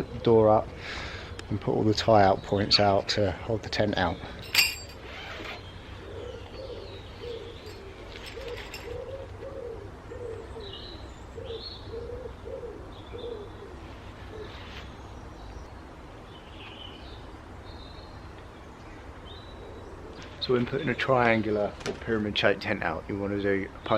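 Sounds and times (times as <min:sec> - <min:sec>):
small birds chirping: 0:00.0 - 0:21.4
pigeon cooing: 0:05.4 - 0:14.9.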